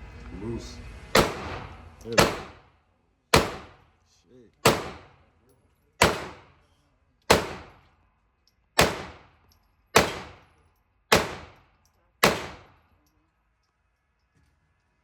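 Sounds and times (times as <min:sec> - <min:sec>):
pistol shots with echo: 0:01.2 - 0:02.7, 0:03.3 - 0:03.8, 0:04.6 - 0:05.2, 0:06.0 - 0:06.6, 0:07.3 - 0:07.8, 0:08.8 - 0:09.4, 0:10.0 - 0:11.6, 0:12.2 - 0:12.8.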